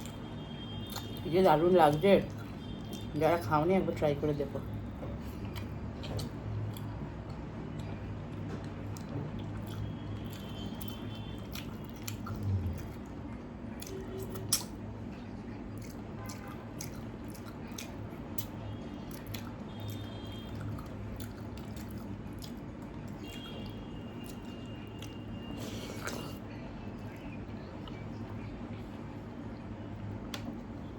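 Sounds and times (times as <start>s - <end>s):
wet squishing and chewing: 0.0s - 29.0s
steady low hum: 0.0s - 30.9s.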